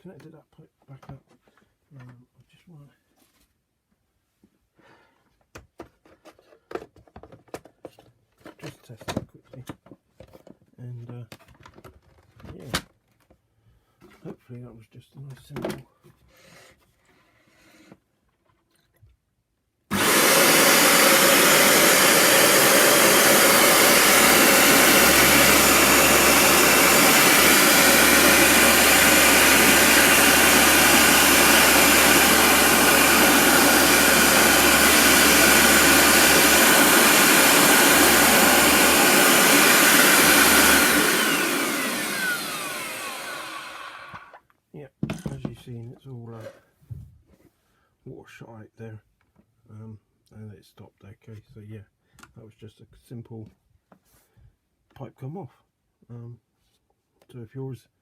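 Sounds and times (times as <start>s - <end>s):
carpet cleaner motor running: 19.9s - 44.4s
motor winding down whine: 19.9s - 44.4s.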